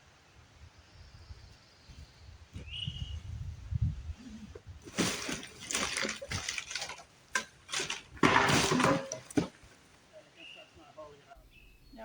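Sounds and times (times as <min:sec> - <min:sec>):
debris clattering: 0:04.8 - 0:09.8
wooden timbers cracking: 0:04.8 - 0:09.8.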